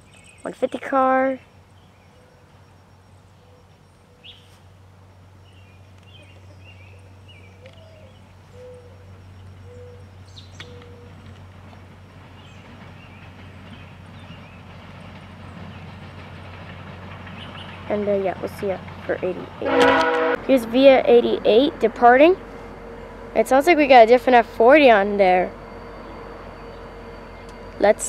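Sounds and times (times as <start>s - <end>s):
birds chirping: 5.4s - 18.4s, 19.6s - 28.0s
steady low hum: 18.2s - 28.0s.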